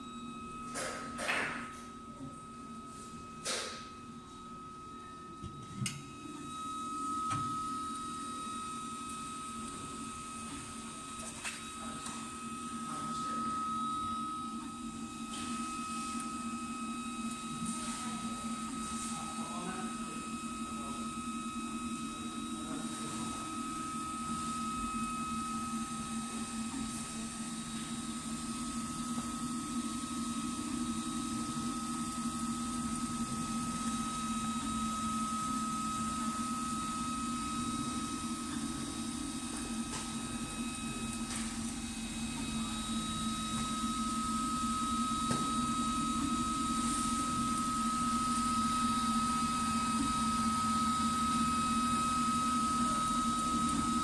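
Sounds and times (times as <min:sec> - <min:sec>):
printer motors and fans humming: 0:00.0 - 0:54.0.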